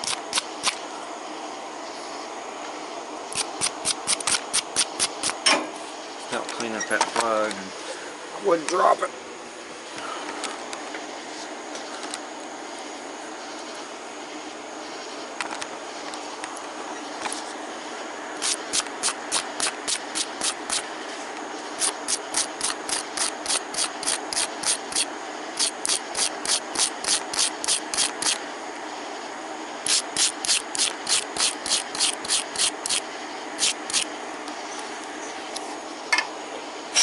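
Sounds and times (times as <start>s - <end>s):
wire brush scrubbing metal: 18.4s - 28.4s, 29.8s - 34.1s.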